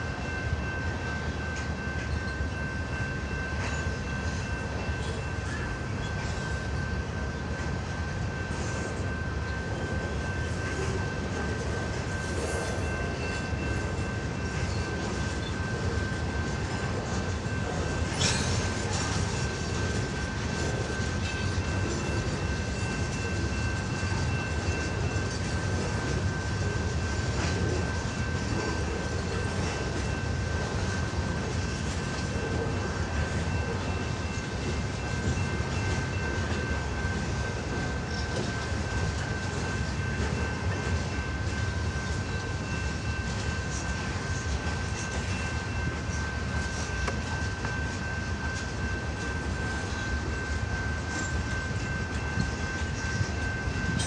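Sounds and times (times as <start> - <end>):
train wheels rumbling on rail: 0.0 - 54.0.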